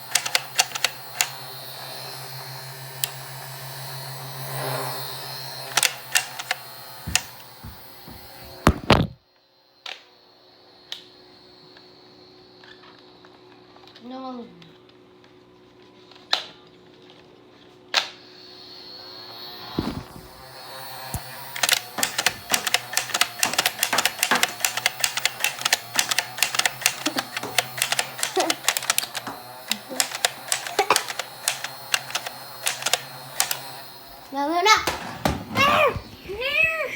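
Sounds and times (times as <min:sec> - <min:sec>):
toy blaster clicks: 0:00.0 - 0:01.9, 0:03.0 - 0:03.4, 0:05.6 - 0:07.5, 0:21.1 - 0:34.4.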